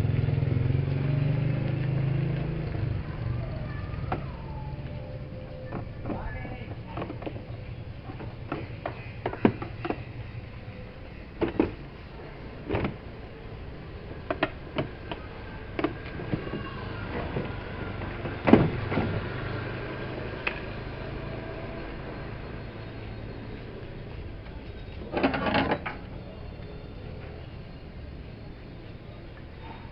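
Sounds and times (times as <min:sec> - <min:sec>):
knocks and clicks of tools: 0:04.1 - 0:10.4, 0:11.4 - 0:12.0, 0:12.6 - 0:13.1, 0:14.2 - 0:19.4.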